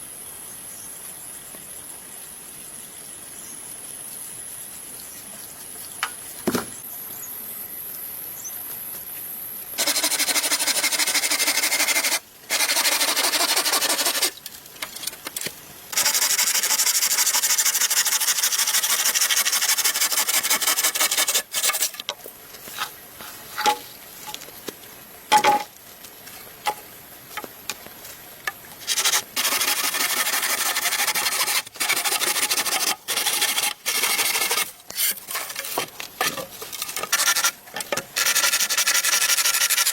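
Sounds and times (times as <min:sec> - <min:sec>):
hand tool rasping wood: 0:09.8 - 0:14.4, 0:15.9 - 0:22.0, 0:28.8 - 0:39.9.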